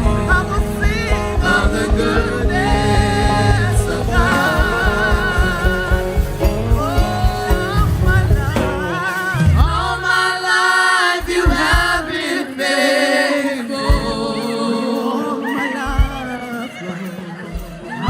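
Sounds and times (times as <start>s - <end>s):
kick drum beats: 0.0s - 10.2s, 11.2s - 12.3s, 13.8s - 14.4s, 15.9s - 16.5s
band playing worship music: 0.0s - 18.0s
voices singing together: 0.0s - 18.0s.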